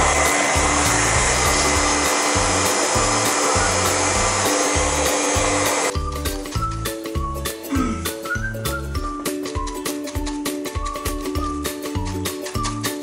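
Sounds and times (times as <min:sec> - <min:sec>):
hand-held dryer blowing: 0:00.0 - 0:06.0
background music with beat: 0:00.0 - 0:13.0.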